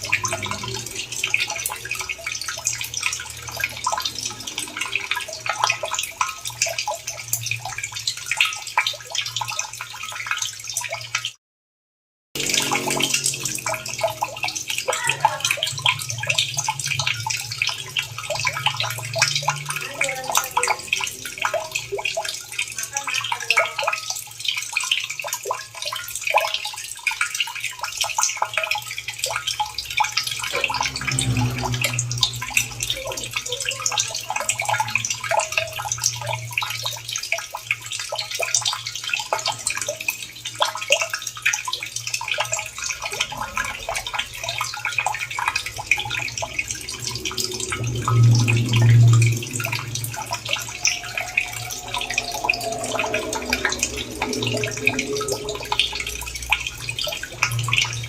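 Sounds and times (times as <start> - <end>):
running water splashing: 0.0 - 11.4, 12.4 - 58.0
low hum: 30.0 - 36.8, 42.7 - 58.0.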